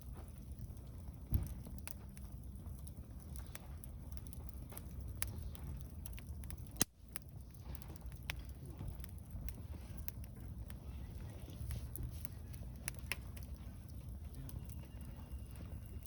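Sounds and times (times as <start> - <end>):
campfire crackling: 0.0 - 16.0
fire snapping: 0.0 - 16.0
low steady rumble: 0.0 - 16.0.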